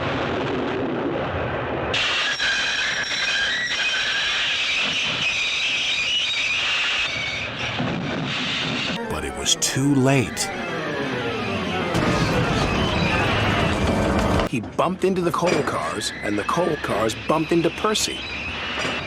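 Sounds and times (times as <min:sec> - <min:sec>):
train brakes squealing: 0:02.1 - 0:06.6.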